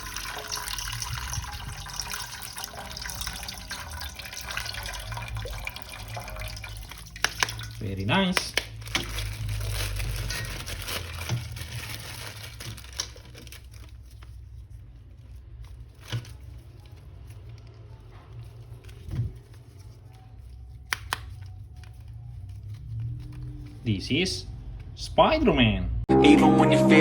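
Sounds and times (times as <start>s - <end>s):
hands crinkling and rustling: 4.6s - 25.0s.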